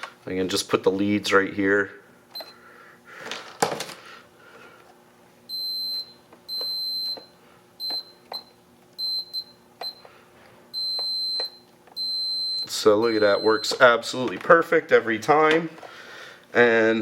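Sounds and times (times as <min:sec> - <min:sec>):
multimeter continuity beeps: 0:02.3 - 0:02.6, 0:05.5 - 0:10.1, 0:10.7 - 0:14.0.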